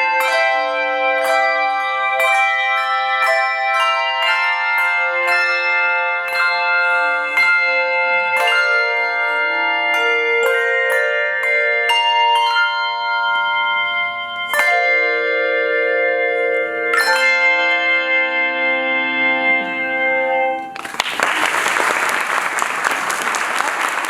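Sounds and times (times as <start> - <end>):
handbell choir ringing chords: 0.0 - 21.8
applause: 20.8 - 24.0.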